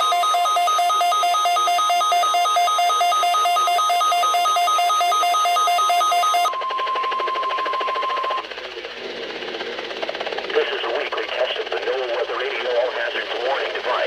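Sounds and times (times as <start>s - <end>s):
steady alarm tone: 0.0s - 8.5s.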